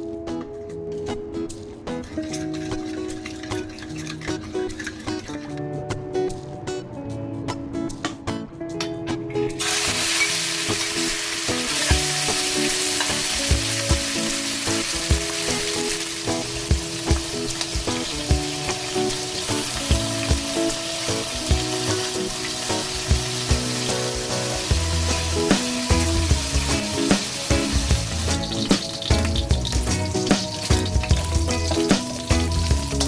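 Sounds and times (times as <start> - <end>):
background music: 0.0 - 33.0
food sizzling in a hot pan: 9.6 - 33.0.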